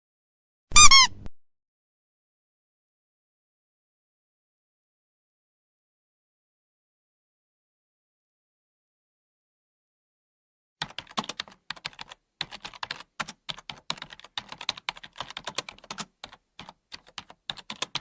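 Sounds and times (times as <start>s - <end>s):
typing on computer keyboard: 10.8s - 18.0s.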